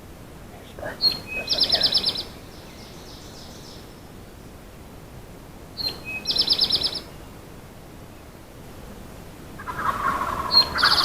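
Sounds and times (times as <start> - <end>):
songbird singing: 0.0 - 11.0
turkey gobbling: 9.6 - 11.0.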